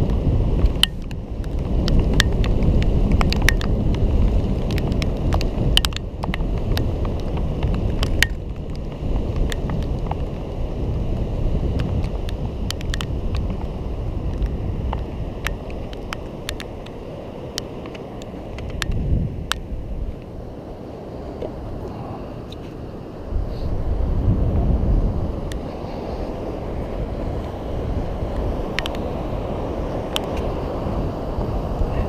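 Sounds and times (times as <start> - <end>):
electric scooter ride noise: 0.0 - 32.0
wind rumble: 0.0 - 32.0
camera mount clicks and rattles: 3.2 - 3.7, 4.7 - 6.4.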